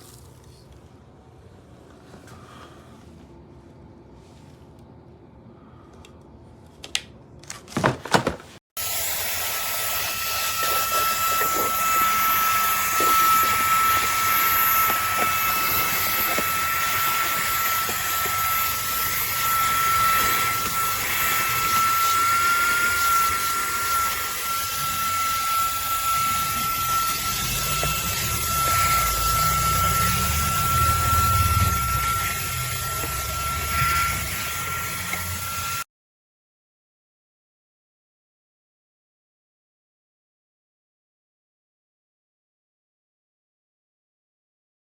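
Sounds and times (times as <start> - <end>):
handheld vacuum running: 8.8 - 35.8.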